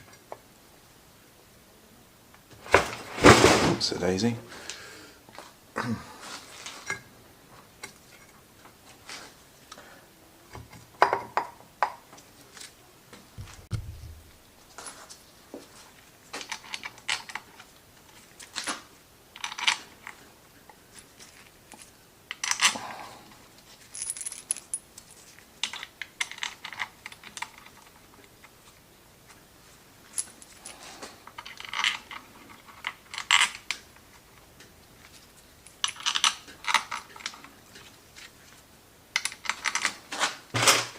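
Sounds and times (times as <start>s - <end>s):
low thud: 13.4s - 14.3s
metal parts and tools clinking: 23.8s - 27.9s.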